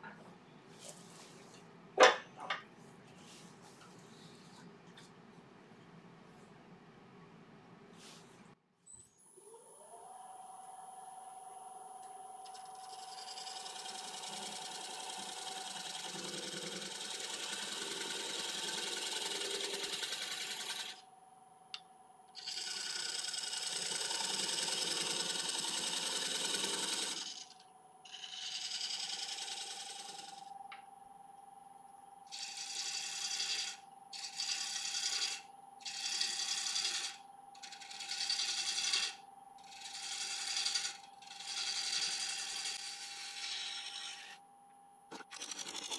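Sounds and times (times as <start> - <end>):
wood lathe motor whine: 9.3 - 21.0, 22.4 - 30.8, 32.3 - 44.4
turning tool cutting wood: 12.5 - 21.0, 22.4 - 30.5, 32.3 - 44.4, 45.1 - 45.9.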